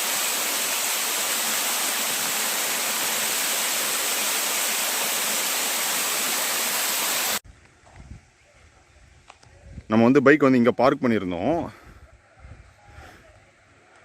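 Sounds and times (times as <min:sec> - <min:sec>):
waterfall rushing: 0:00.0 - 0:07.4.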